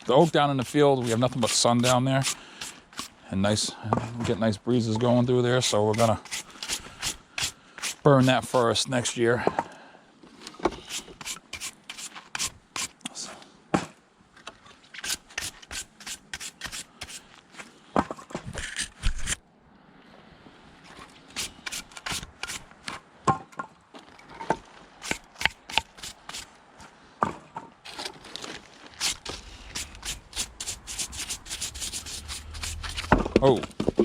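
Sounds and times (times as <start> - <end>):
wood rubbing and scraping: 0.0 - 3.2, 3.9 - 8.6, 10.4 - 13.0, 15.0 - 19.4, 24.0 - 34.0.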